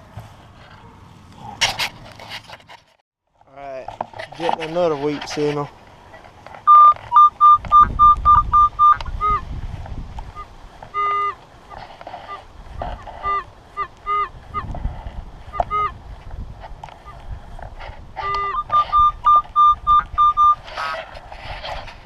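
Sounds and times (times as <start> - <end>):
metal detector beeping: 6.7 - 9.4, 10.4 - 11.4, 12.2 - 14.7, 15.5 - 16.0, 18.2 - 20.9.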